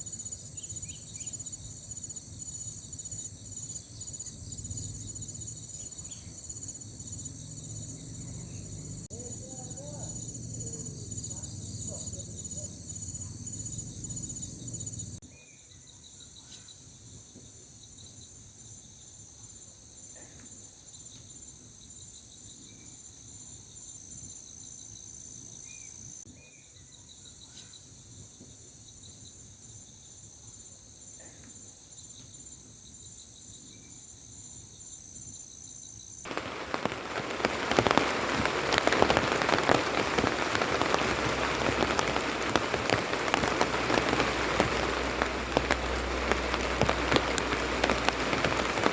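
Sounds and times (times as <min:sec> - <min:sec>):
insects chirping in trills: 0:00.0 - 0:16.7, 0:35.5 - 0:48.9
loud steady rain: 0:36.3 - 0:48.9.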